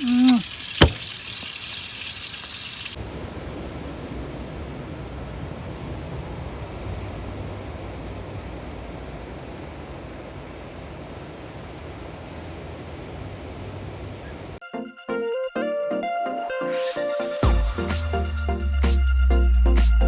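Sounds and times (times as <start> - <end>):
frying sizzle: 0.0 - 3.0.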